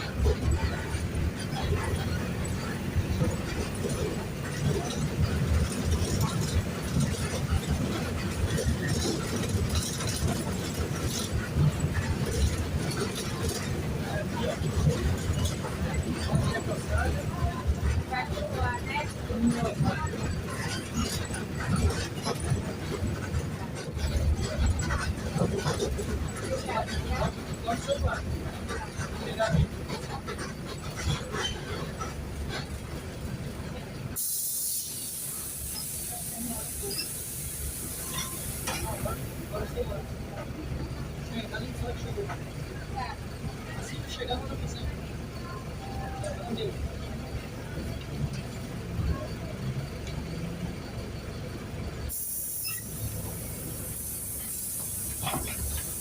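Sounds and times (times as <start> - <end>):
diesel bus engine rumbling: 0.0 - 56.0
sharp hiss: 34.2 - 38.7, 52.1 - 56.0.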